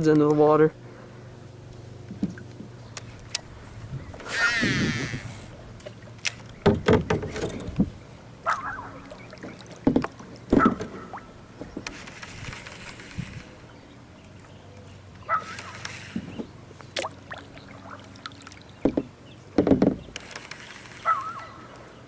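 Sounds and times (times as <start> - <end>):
fishing gear knocking in kayak: 9.8 - 10.9, 18.8 - 20.1.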